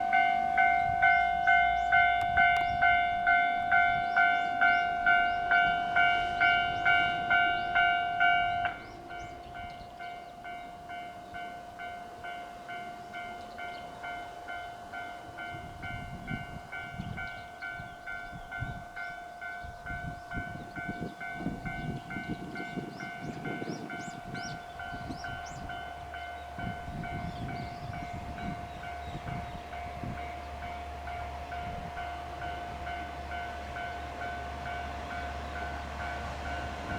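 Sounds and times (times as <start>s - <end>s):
level-crossing alarm dinging: 0.0s - 36.9s
train rumbling past: 0.0s - 36.9s.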